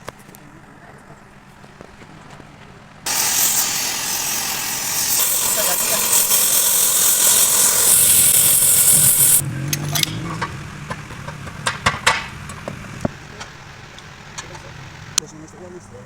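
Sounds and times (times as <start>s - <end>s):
loud steady hiss: 3.1s - 9.4s.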